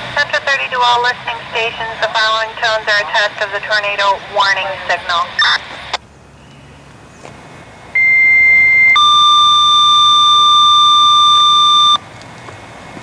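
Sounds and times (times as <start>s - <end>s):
faint radio hiss: 0.0s - 6.1s
steady radio beep: 1.5s - 5.8s, 8.0s - 12.0s
two-tone paging chord: 8.0s - 12.0s.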